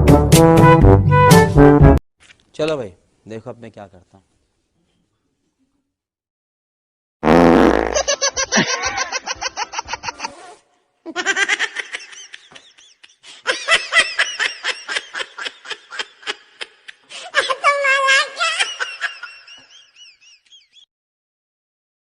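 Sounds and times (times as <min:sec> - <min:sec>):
wet fart: 0:07.2 - 0:08.1
laughter in quick bursts: 0:07.9 - 0:10.4, 0:11.1 - 0:17.6.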